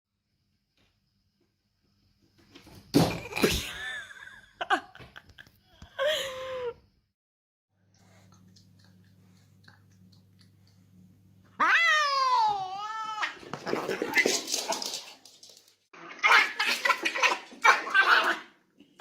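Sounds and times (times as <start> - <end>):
pet crying: 11.6 - 13.4
scuffling and clattering: 13.4 - 15.8.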